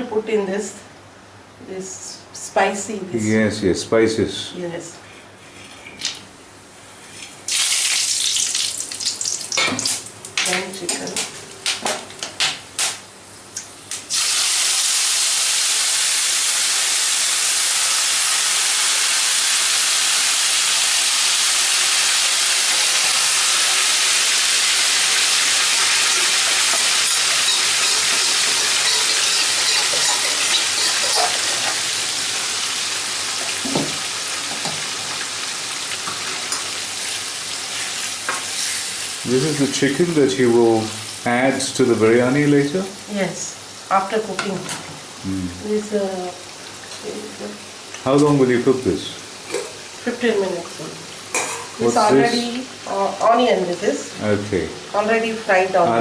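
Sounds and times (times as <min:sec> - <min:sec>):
chicken sizzling in hot oil: 0:07.5 - 0:10.1, 0:13.9 - 0:54.1.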